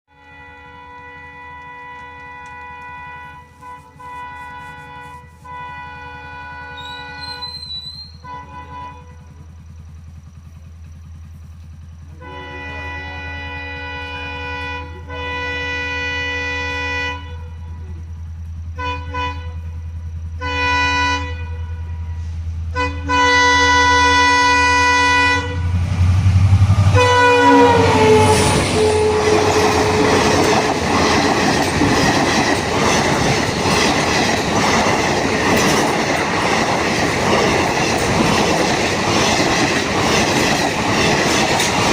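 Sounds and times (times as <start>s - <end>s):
locomotive horn blasts: 0.1s - 9.5s, 12.1s - 18.1s, 18.7s - 25.8s, 26.8s - 30.8s
train wheels clacking on rail joints: 0.9s - 5.2s, 25.7s - 41.9s
low engine hum: 8.4s - 15.2s, 21.1s - 33.5s.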